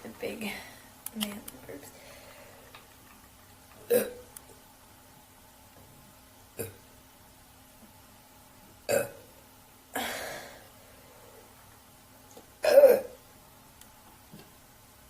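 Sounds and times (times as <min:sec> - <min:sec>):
woman burping: 0:03.8 - 0:04.3, 0:06.6 - 0:06.8, 0:08.9 - 0:09.3, 0:09.9 - 0:10.6, 0:12.6 - 0:13.2.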